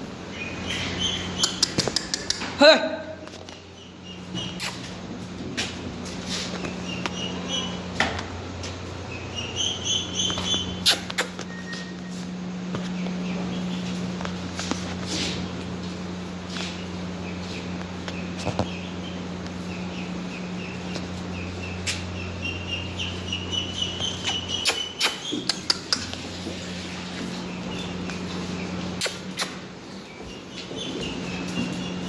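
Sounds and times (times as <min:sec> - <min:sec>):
steady low hum: 0:00.0 - 0:32.0
small birds chirping: 0:00.2 - 0:32.0.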